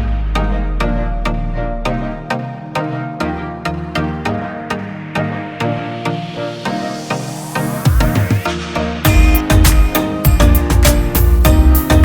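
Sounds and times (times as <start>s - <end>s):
electronic music with quick beat: 4.9s - 12.0s.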